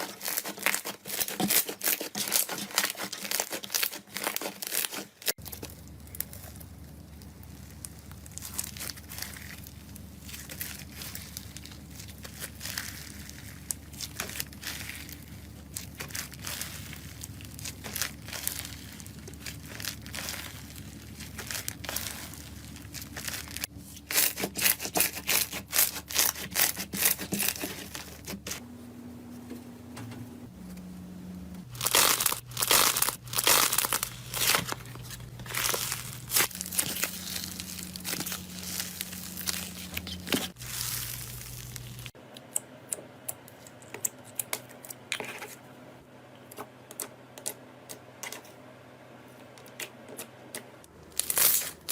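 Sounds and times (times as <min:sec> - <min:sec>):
slime crackling and popping: 0:00.1 - 0:28.6, 0:31.7 - 0:42.2, 0:51.1 - 0:51.9.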